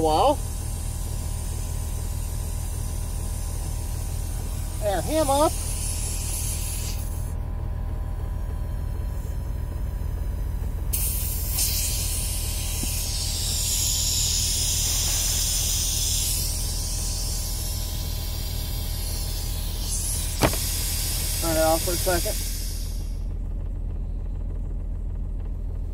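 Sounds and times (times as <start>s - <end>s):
air hissing through needle: 0.0s - 7.4s, 10.9s - 23.2s
air compressor humming: 0.0s - 25.9s.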